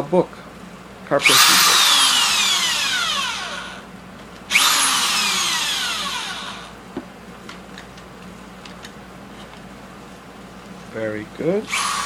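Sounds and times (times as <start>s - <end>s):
electric drill motor whine: 1.2s - 3.9s, 4.5s - 6.8s, 11.7s - 12.0s.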